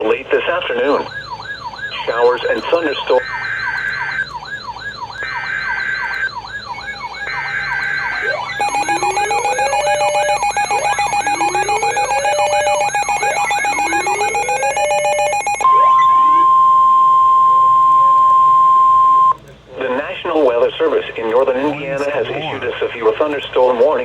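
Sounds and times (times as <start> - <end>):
electronic sirens yelping and wailing: 0.6 - 20.5
steady high alert tone: 0.8 - 19.4.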